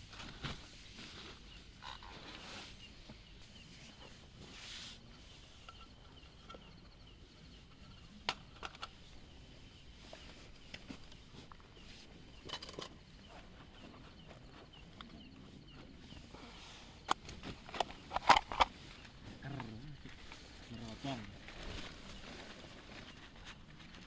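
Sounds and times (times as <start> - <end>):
cooking gear clicks and knocks: 7.9 - 9.0, 12.4 - 13.0, 17.1 - 20.2.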